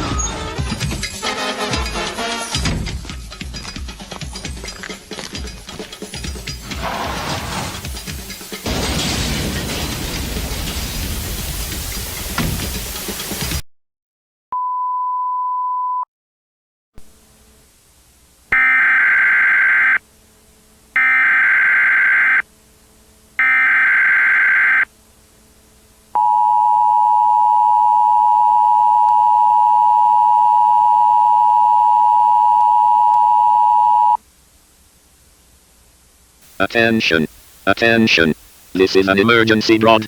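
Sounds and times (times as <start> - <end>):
data tone bursts: 18.6 - 20.0, 21.0 - 22.4, 23.4 - 24.9
steady beep: 18.6 - 20.0, 21.0 - 22.4, 23.4 - 24.9
two-tone attention signal: 18.6 - 20.0, 21.0 - 22.4, 23.4 - 24.9.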